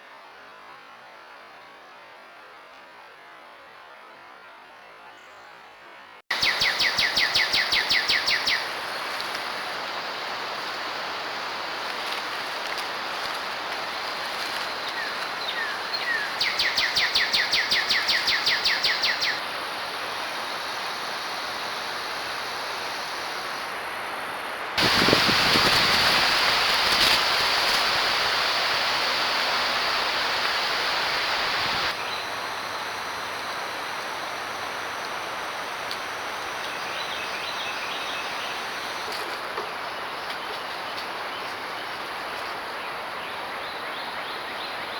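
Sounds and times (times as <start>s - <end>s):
steady outdoor hiss: 0.0s - 44.9s
rapid chirping trill: 6.3s - 8.8s.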